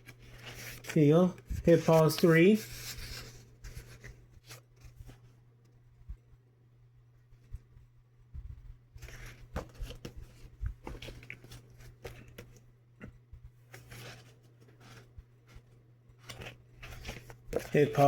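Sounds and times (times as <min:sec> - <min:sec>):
pages rustling and flipping: 0:00.0 - 0:05.3, 0:09.0 - 0:18.0.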